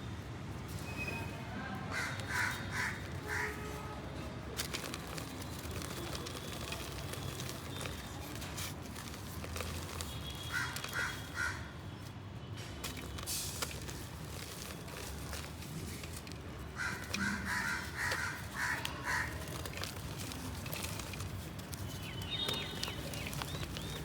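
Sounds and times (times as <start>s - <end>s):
crow cawing: 1.9s - 3.8s, 10.4s - 11.8s, 16.7s - 20.1s
dry clay crumbling: 1.9s - 11.6s, 12.6s - 24.0s.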